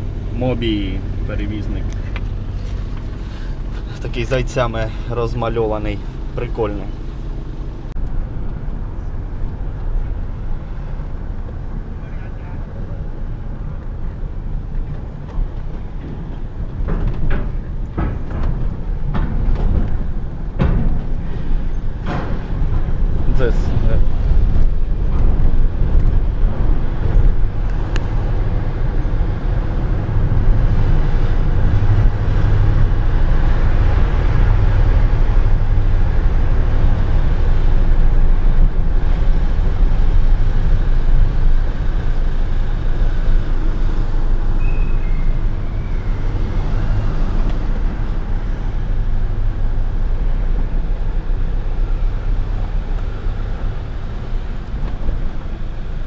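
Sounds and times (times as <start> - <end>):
van engine and road noise: 0.0 - 56.0
brief high squeak: 44.6 - 46.2.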